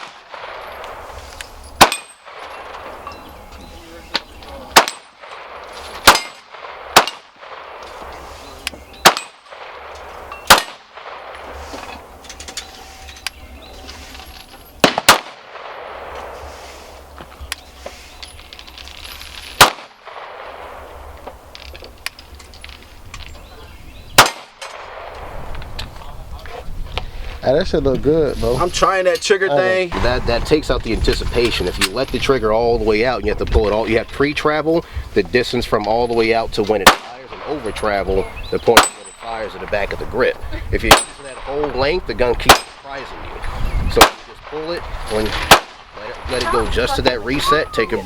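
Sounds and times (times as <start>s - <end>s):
pistol shots: 1.8s - 3.0s, 4.7s - 8.1s, 9.0s - 11.6s, 14.8s - 16.4s, 19.6s - 21.1s, 24.2s - 25.4s, 36.8s - 38.0s, 38.7s - 39.8s, 40.8s - 46.1s.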